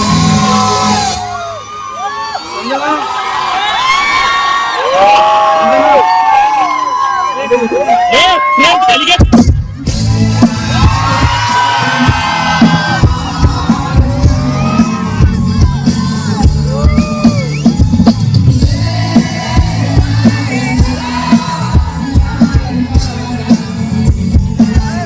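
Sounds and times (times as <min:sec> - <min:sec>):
crowd screaming and cheering: 0:00.0 - 0:25.0
live concert music: 0:00.0 - 0:25.0
heavy drum beat: 0:09.2 - 0:25.0
person singing: 0:10.1 - 0:17.5, 0:18.6 - 0:25.0.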